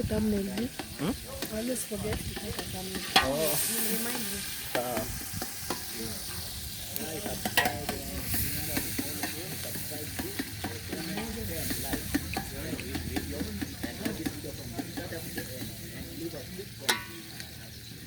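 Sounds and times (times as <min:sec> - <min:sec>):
frying sizzle: 0:00.0 - 0:18.0
spoon stirring and scraping pot: 0:00.7 - 0:06.6, 0:07.2 - 0:15.8
spoon knocking against pot: 0:16.9 - 0:17.3.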